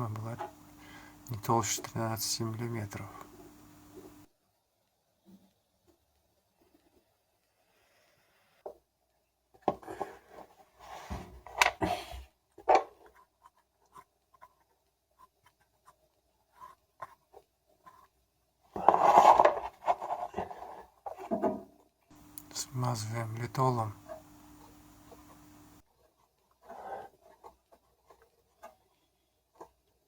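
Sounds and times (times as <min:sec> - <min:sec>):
rubbing scrape: 0:10.0 - 0:11.4
hands rustling and scraping parts: 0:12.6 - 0:21.4.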